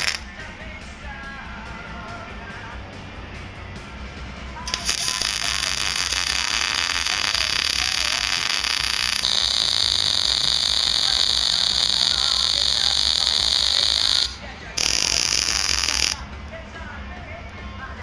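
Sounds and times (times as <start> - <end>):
welder arc crackling: 0.0 - 0.5, 4.6 - 16.3.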